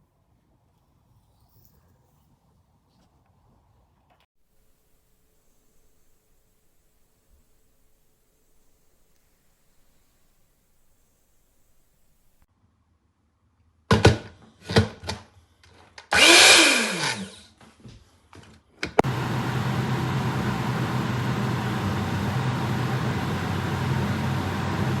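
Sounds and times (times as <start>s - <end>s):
blender motor running: 16.1s - 17.4s, 19.0s - 25.0s.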